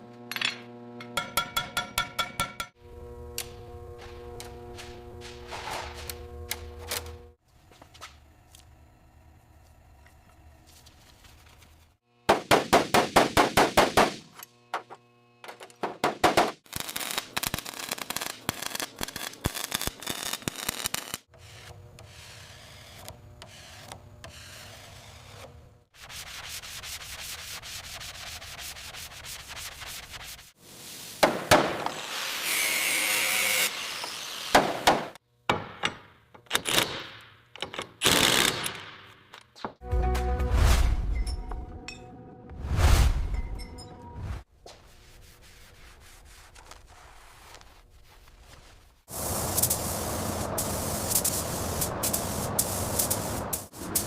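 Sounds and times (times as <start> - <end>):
back-and-forth rubbing strokes: 21.4 - 31.1, 44.7 - 49.6
steady hiss: 49.1 - 54.0.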